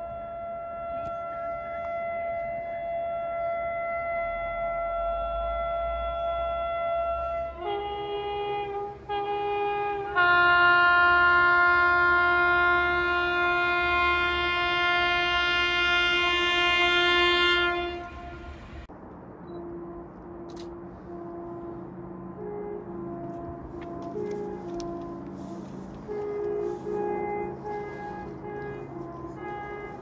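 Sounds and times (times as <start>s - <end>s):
train air horn: 0.0s - 18.9s, 19.6s - 30.0s
low rumble: 17.9s - 30.0s.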